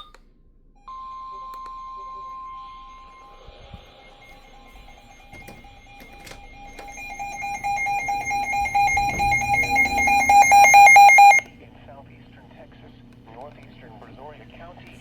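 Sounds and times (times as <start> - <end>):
faint steady alert tone: 6.4 - 11.4
fast warbling beep: 6.5 - 11.4.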